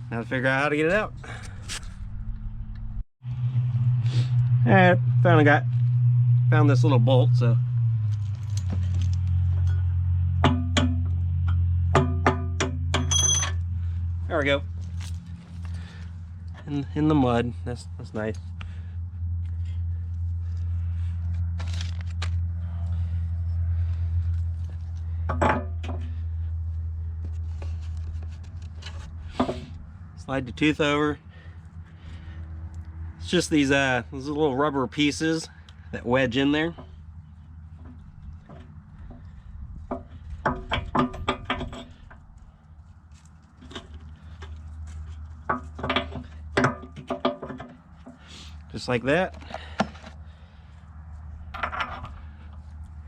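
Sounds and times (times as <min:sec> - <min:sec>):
steady low hum: 0:00.0 - 0:53.0
metallic clinks of steel parts: 0:13.0 - 0:13.6.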